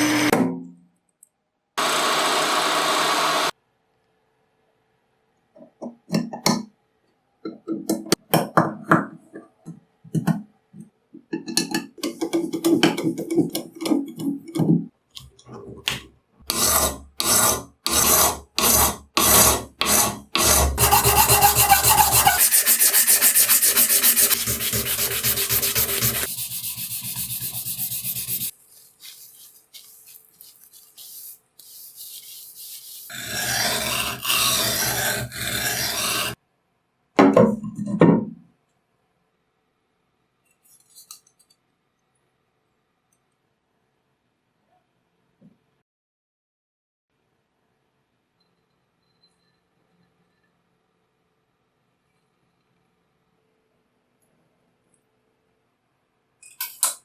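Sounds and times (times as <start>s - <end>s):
file rasping on metal: 16.5s - 36.4s.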